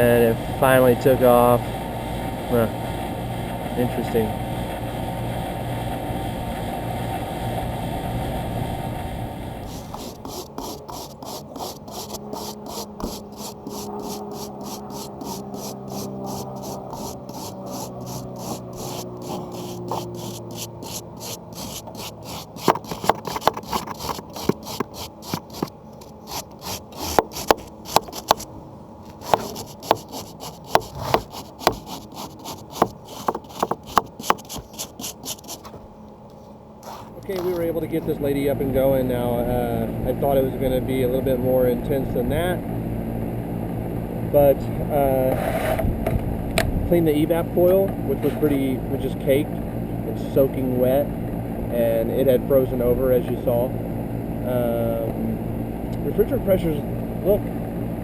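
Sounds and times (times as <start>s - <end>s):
blower air noise: 0.0s - 58.0s
rhythmic scraping strokes: 9.6s - 28.4s, 29.1s - 35.8s
sharp knocks: 21.6s - 25.7s, 26.4s - 28.4s, 29.2s - 35.5s.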